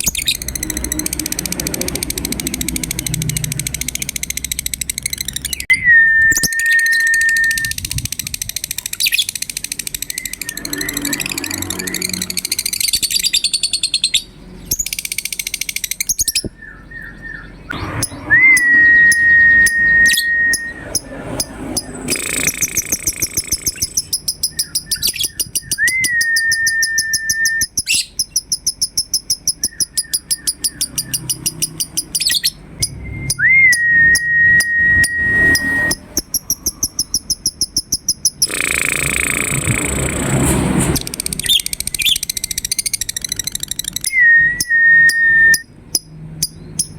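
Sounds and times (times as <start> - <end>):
bird shrill rapid chirps: 0.0 - 40.4, 41.0 - 46.9
bird whistled rising note: 5.6 - 7.8, 10.1 - 13.6, 17.7 - 21.2, 24.6 - 27.7, 32.8 - 36.2.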